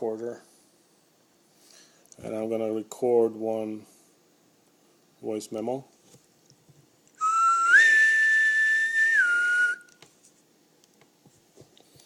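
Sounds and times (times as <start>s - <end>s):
person whistling: 7.2s - 9.9s.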